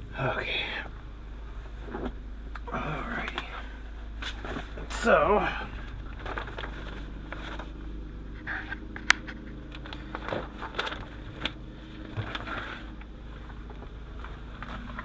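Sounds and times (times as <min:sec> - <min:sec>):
low hum: 0:00.0 - 0:15.0
wiring clicks and rustles: 0:01.7 - 0:15.0.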